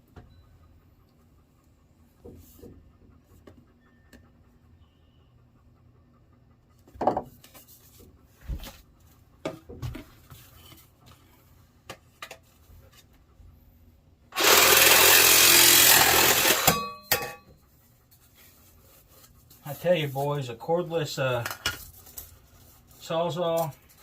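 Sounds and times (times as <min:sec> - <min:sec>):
knocks and clatters of handling: 0:06.8 - 0:13.2, 0:21.4 - 0:22.6
reciprocating saw cutting: 0:14.4 - 0:16.9.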